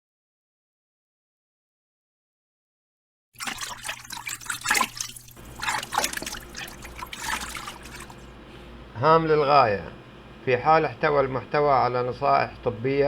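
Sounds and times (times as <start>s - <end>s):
liquid trickling and splashing: 3.4s - 8.3s
faint steady hum: 3.4s - 13.0s.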